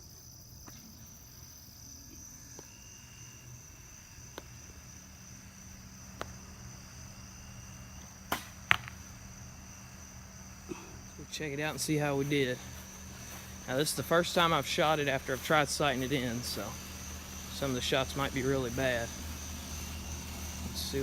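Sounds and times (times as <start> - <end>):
insects buzzing: 0.0 - 21.0
bowstring snap: 8.0 - 9.1
arrow striking target: 8.3 - 9.0.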